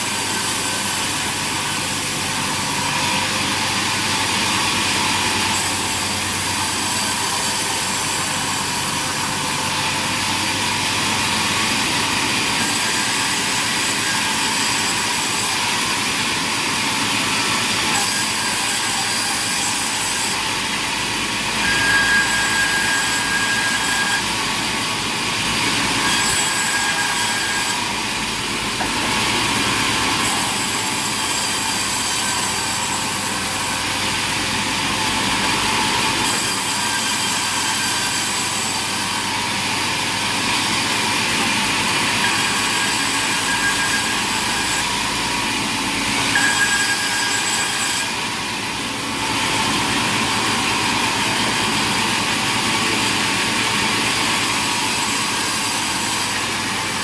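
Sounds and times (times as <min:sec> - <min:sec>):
sawmill machinery running: 0:00.0 - 0:57.0.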